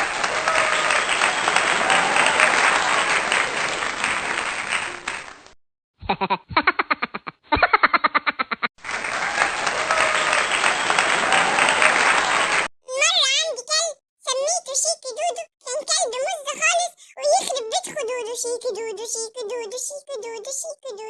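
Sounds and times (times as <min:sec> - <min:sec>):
crowd noise: 0:00.0 - 0:05.6, 0:08.8 - 0:13.1
people clapping: 0:00.0 - 0:05.6, 0:08.8 - 0:12.7.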